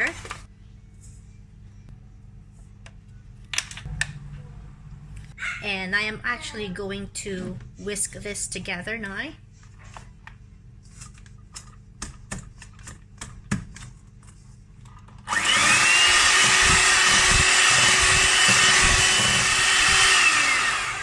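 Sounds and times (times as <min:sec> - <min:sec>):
electric hand mixer whining: 0:15.3 - 0:21.0.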